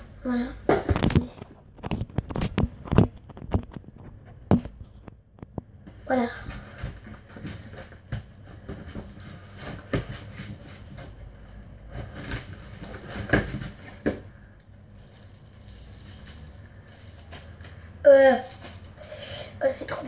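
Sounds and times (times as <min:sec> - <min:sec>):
slime squishing and crackling: 0:11.9 - 0:19.0.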